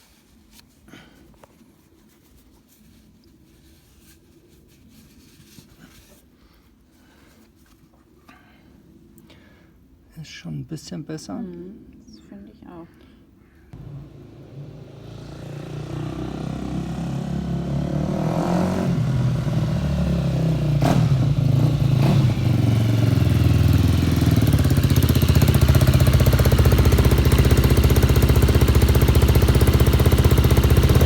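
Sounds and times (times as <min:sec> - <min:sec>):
motorcycle engine running: 0:13.8 - 0:31.0.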